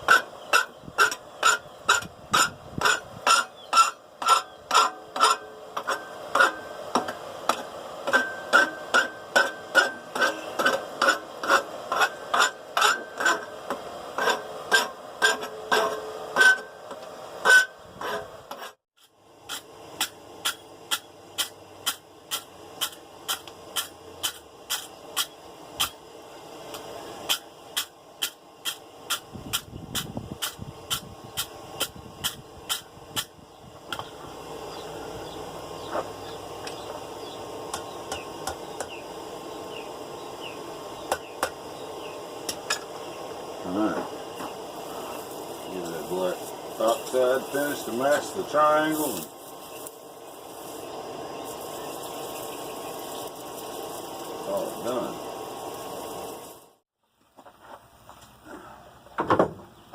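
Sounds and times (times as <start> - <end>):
rasp filing metal: 0.0 - 6.7, 8.1 - 13.5, 14.2 - 16.7, 17.4 - 18.8.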